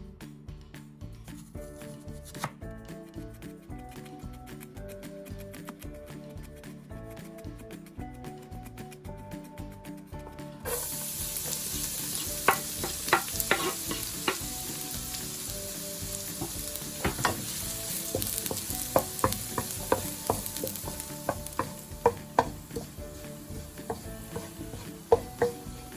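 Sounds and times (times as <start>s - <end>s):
food sizzling in oil: 10.7s - 25.9s
utensil clacking against pan: 11.5s - 14.6s, 16.3s - 25.9s.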